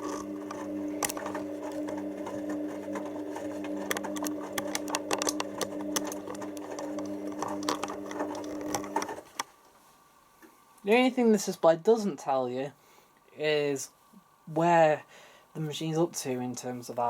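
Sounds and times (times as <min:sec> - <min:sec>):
washing machine motor humming: 0:00.0 - 0:09.4.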